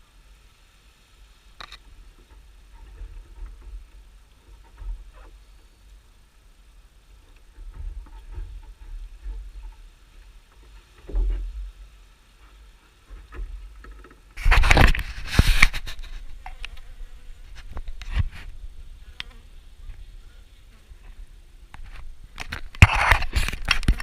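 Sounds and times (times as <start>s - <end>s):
honeybees buzzing: 14.2s - 24.0s
loud rushing rustling noise: 14.4s - 16.4s.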